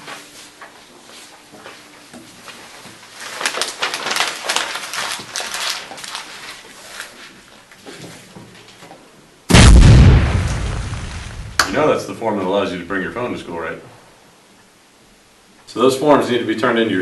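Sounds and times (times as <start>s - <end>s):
paper rustling and crinkling: 0.0s - 8.8s.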